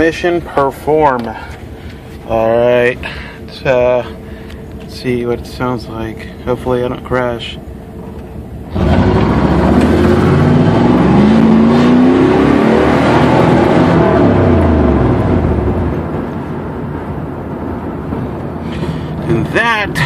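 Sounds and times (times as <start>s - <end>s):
car engine revving: 6.6s - 19.6s.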